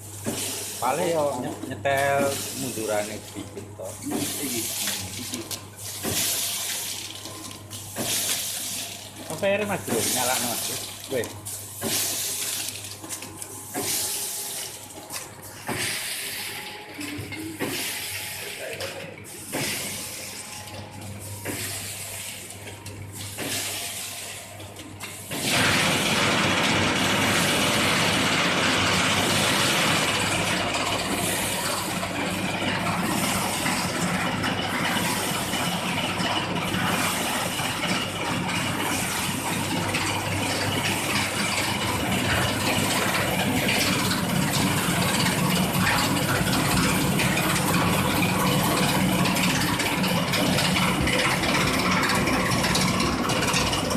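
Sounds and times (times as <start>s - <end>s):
packing machine rattling: 25.3s - 53.9s.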